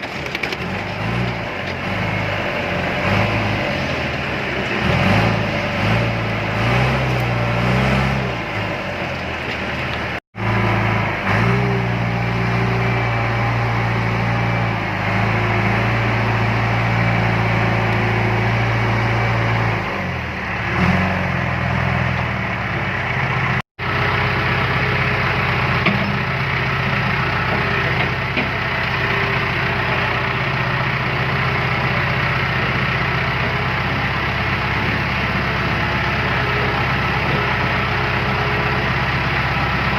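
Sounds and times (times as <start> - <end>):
diesel engines running: 0.0 - 39.9.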